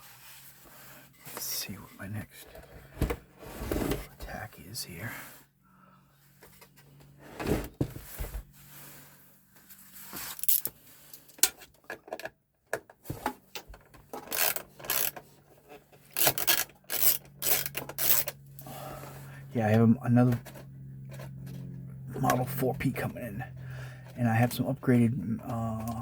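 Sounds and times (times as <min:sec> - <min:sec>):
computer parts scraping and knocking: 0:12.9 - 0:18.4.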